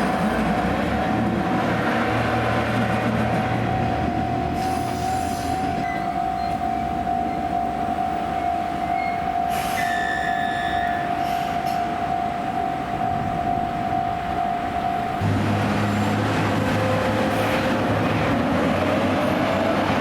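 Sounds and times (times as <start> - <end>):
train running over rails: 0.0 - 20.0
level-crossing alarm tone: 1.0 - 18.1
high wheel squeal: 3.8 - 7.0, 8.4 - 11.9.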